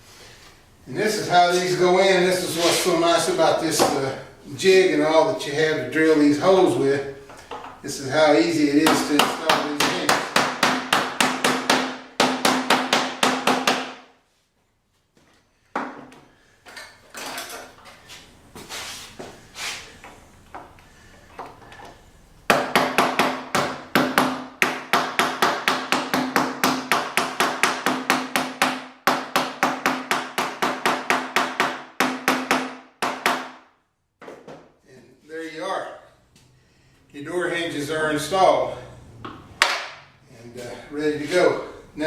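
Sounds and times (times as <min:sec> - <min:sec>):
fast hammer taps: 0:08.8 - 0:14.0, 0:22.5 - 0:33.6.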